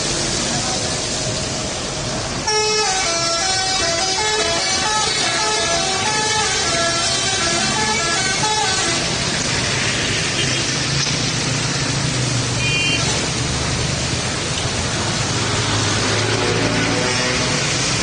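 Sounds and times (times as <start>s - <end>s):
heavy traffic engine drone: 0.0s - 18.0s
musical air horn tune: 2.4s - 9.1s.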